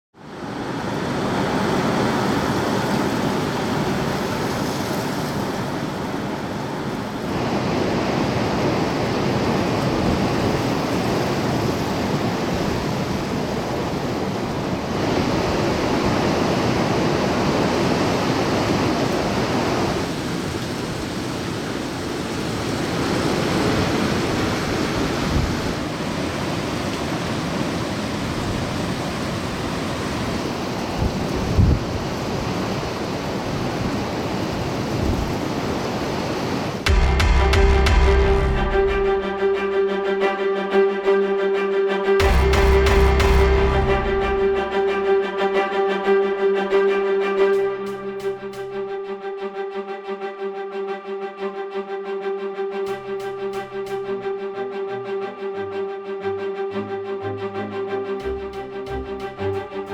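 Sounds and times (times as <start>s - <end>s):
strong wind on microphone: 23.0s - 26.2s, 28.2s - 39.2s.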